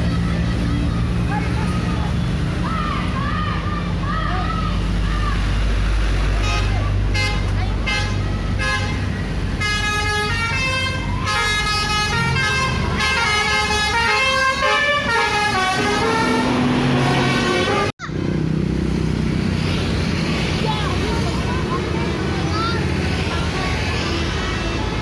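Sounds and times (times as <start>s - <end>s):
bus engine running: 0.0s - 25.0s
bus horn melody: 6.3s - 17.9s.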